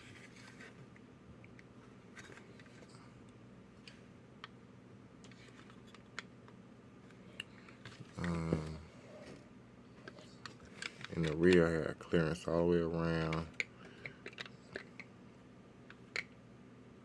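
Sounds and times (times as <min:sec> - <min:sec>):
faint steady hum: 0:00.0 - 0:17.0
small clicks of toy handling: 0:05.2 - 0:08.8, 0:10.0 - 0:11.7, 0:13.1 - 0:15.1.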